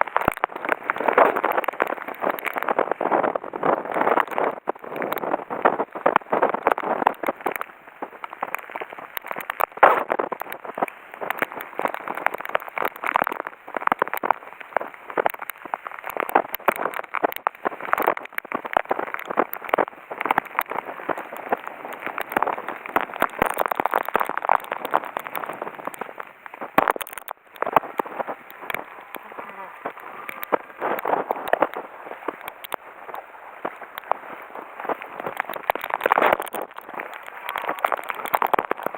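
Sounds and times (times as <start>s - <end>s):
heavy rain pelting down: 0.0s - 38.9s.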